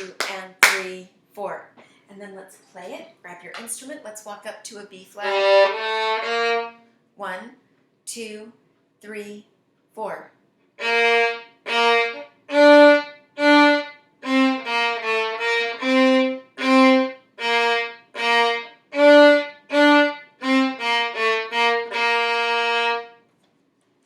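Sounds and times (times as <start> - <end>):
violin melody: 5.2 - 6.9, 10.8 - 23.2.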